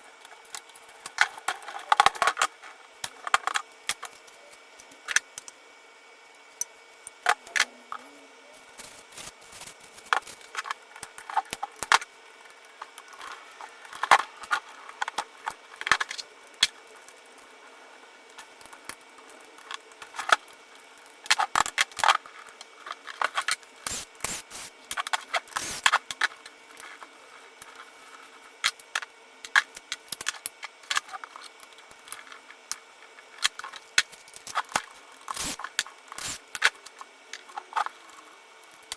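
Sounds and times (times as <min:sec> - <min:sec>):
metal parts clinking and scraping: 0:35.3 - 0:36.4.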